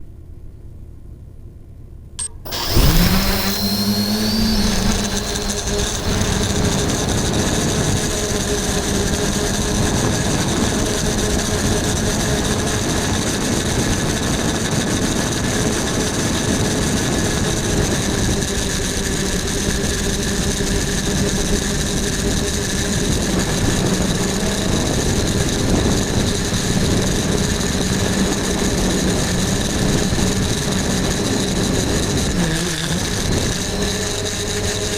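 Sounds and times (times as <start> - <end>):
drone propellers whirring: 2.2 - 12.8.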